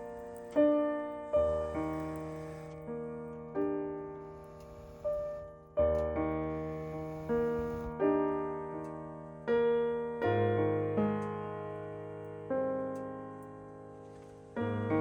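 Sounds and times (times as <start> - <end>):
slow piano chords: 0.0 - 15.0.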